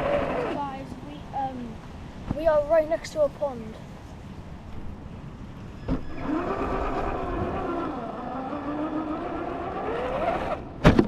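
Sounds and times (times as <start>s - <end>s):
electric motor whining: 5.9s - 10.8s.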